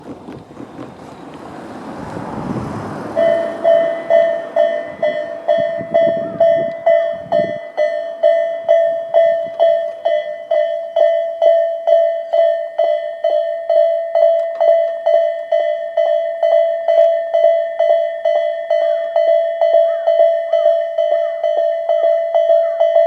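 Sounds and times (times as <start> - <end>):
vehicle rumbling past: 0.0 - 7.6
level crossing warning bell: 0.6 - 23.0.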